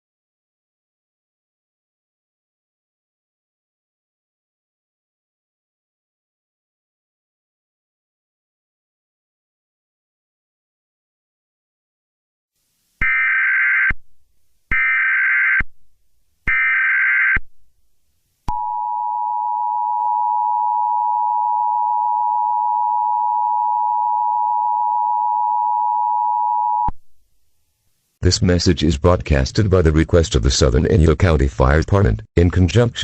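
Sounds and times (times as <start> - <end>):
two-tone alarm: 13.0 - 14.0, 14.7 - 15.6, 16.5 - 17.4, 18.5 - 26.9.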